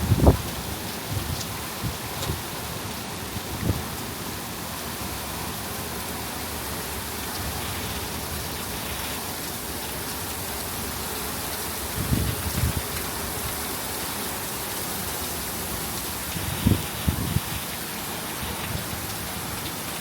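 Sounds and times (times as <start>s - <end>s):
rain falling steadily: 0.0s - 20.0s.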